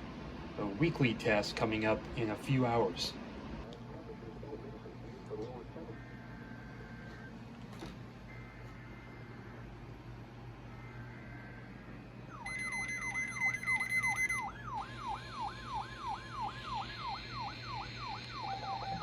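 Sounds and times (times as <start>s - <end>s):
siren sweeping down in pitch: 12.3s - 19.0s
steady high beep: 12.4s - 14.5s.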